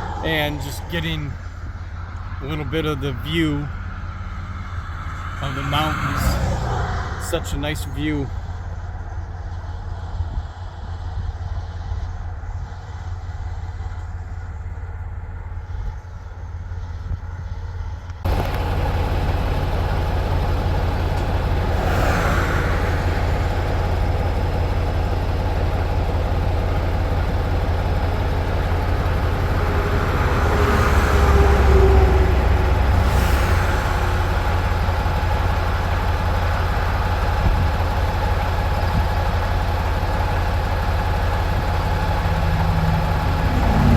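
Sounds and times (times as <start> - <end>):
road noise: 0.0 - 43.9
truck engine drone: 0.0 - 43.9.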